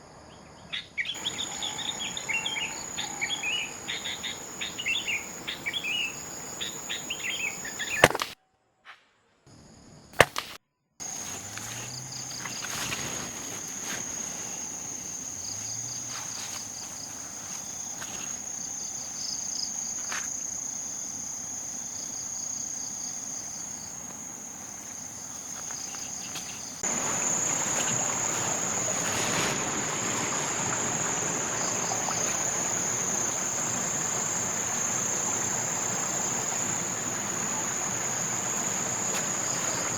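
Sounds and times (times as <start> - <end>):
insects buzzing: 0.0 - 8.4, 9.5 - 39.9
bird chirps: 0.5 - 8.2
sharp snaps: 7.8 - 8.4, 10.2 - 10.6
broad rushing hiss: 10.2 - 19.6, 23.6 - 39.9.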